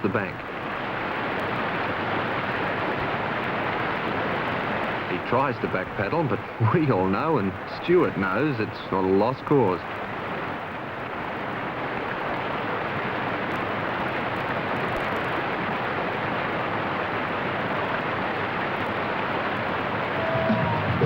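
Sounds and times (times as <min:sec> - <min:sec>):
whitewater rushing: 0:00.1 - 0:21.0
guitar music: 0:20.3 - 0:21.0.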